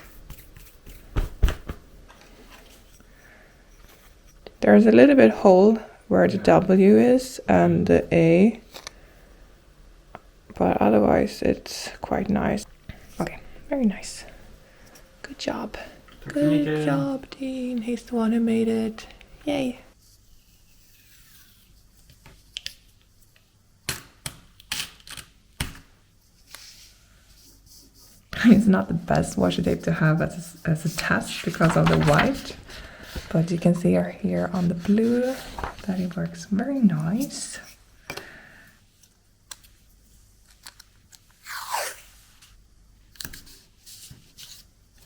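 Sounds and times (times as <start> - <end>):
tape being pulled and torn: 40.5 - 42.1.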